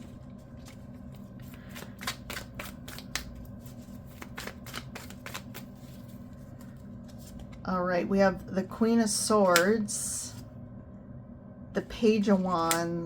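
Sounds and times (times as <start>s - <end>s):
cards being shuffled: 0.0s - 7.7s.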